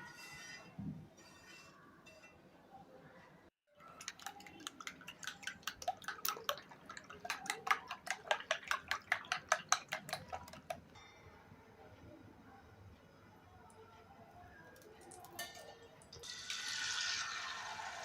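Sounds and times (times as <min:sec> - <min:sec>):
whisk clinking against bowl: 0:03.9 - 0:11.0.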